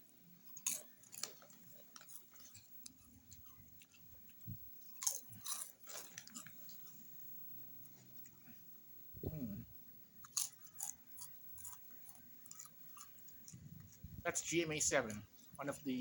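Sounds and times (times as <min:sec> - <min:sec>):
crunching chips: 0:00.4 - 0:07.0, 0:10.2 - 0:16.0.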